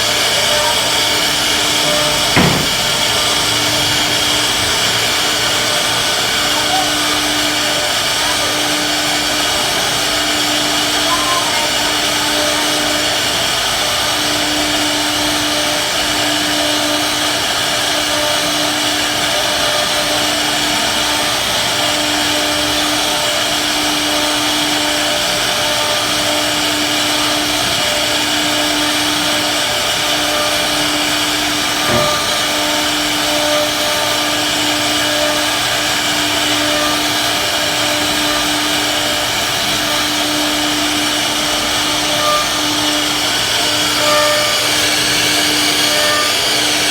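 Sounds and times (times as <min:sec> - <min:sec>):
cnc router spindle whine: 0:00.0 - 0:46.9
single short knock: 0:01.8 - 0:04.2, 0:31.8 - 0:32.4.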